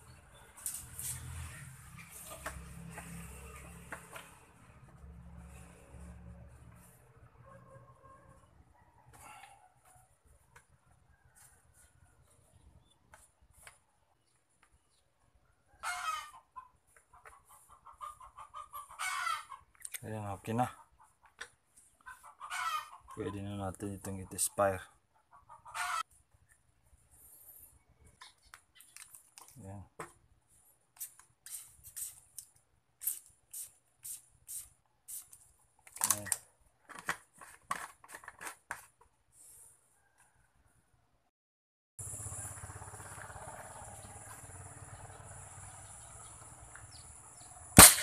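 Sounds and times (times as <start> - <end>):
chicken squawks: 15.7 - 19.7, 22.0 - 23.4, 25.2 - 26.1
chickens clucking: 15.7 - 19.8, 20.5 - 23.6, 25.1 - 26.1
spray bottle squirts: 31.0 - 35.4.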